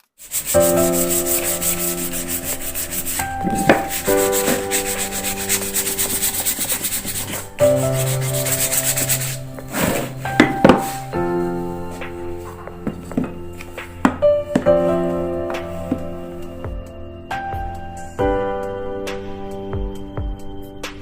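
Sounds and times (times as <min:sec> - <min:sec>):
sandpaper rubbing on wood: 0:00.0 - 0:11.1
background music with held chords: 0:00.4 - 0:21.0.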